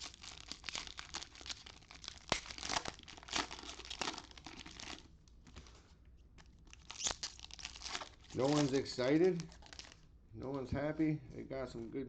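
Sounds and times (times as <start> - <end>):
cellophane wrappers crackling: 0.0 - 5.8, 6.4 - 10.0.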